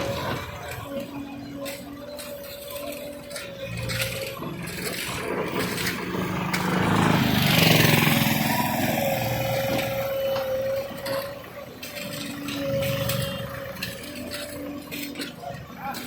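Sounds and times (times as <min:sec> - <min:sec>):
motor whining: 0:00.0 - 0:16.0.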